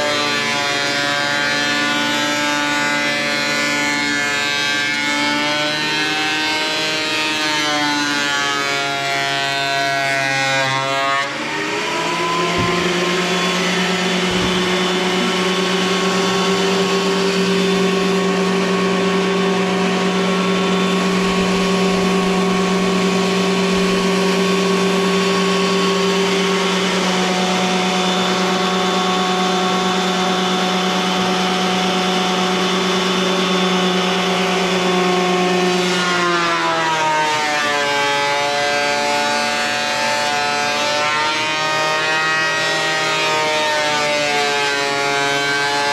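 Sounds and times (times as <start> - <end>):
thickness planer running: 0.0 - 45.9
hiss of planer cutting wood: 6.9 - 28.7.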